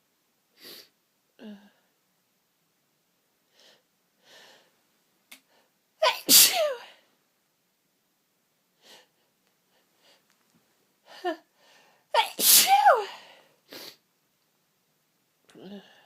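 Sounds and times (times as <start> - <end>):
woman sneezing: 6.0 - 7.0, 12.2 - 13.3.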